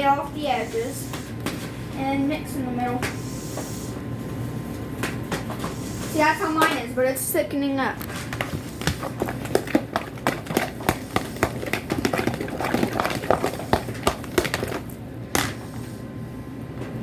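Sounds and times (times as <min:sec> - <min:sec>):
spoon stirring slime in bowl: 0:08.0 - 0:15.6.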